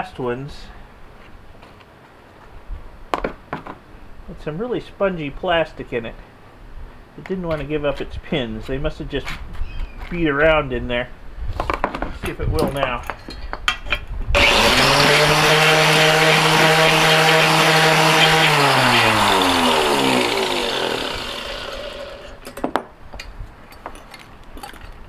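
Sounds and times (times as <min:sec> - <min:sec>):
ore crusher running: 0:14.4 - 0:22.6
plastic shredding rattle: 0:14.4 - 0:22.8.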